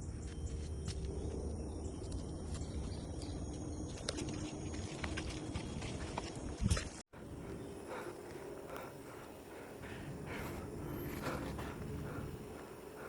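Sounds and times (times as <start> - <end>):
footsteps on trail: 2.0 - 13.0
insects trilling: 7.2 - 13.0.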